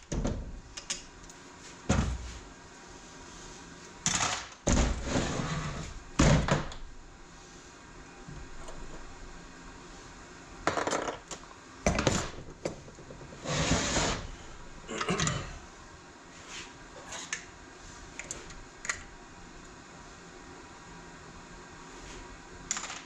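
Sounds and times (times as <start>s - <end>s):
metal scraping slide: 13.3s - 14.4s.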